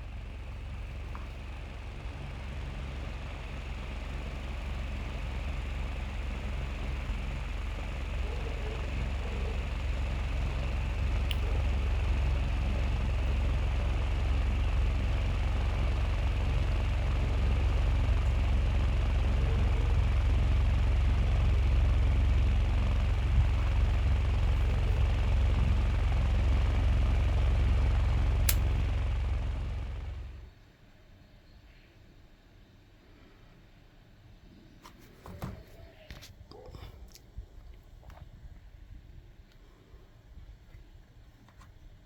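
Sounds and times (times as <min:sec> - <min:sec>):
small fan running: 0:00.0 - 0:30.6
fan switch click: 0:28.2 - 0:29.4.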